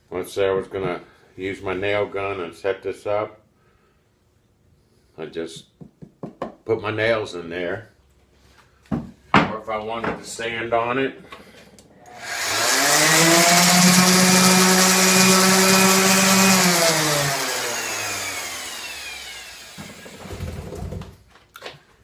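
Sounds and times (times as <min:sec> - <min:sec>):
electric power sander whining: 0:12.1 - 0:20.2.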